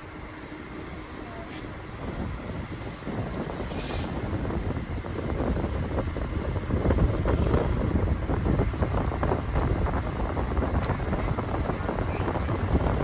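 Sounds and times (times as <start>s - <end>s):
car road rumble: 0.0s - 13.0s
wind buffeting microphone: 0.1s - 13.0s.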